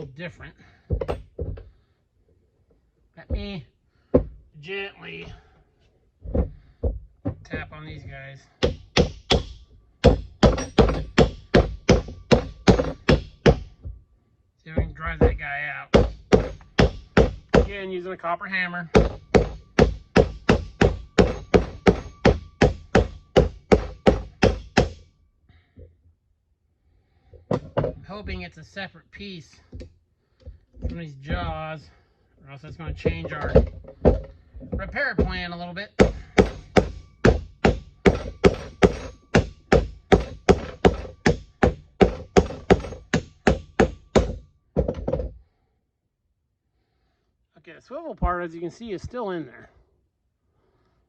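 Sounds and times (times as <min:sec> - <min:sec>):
hammer tapping on metal vise: 0:08.6 - 0:14.0, 0:18.9 - 0:25.0, 0:36.0 - 0:45.4.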